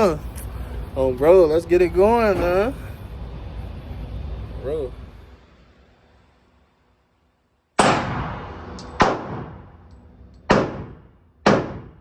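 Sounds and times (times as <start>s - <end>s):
gunshots: 7.8s - 9.8s, 10.5s - 12.0s.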